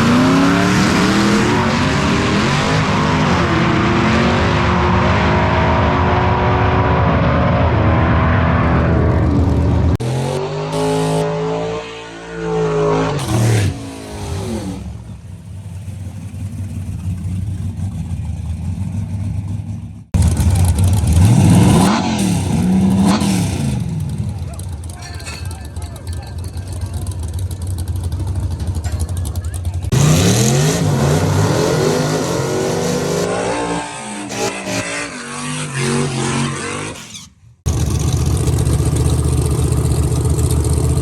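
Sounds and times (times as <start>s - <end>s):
race car engine shifting gears: 13.0s - 34.9s.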